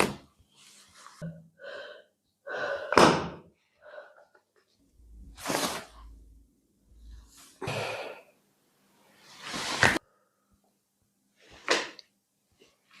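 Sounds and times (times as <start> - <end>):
person breathing hard: 1.5 - 4.4.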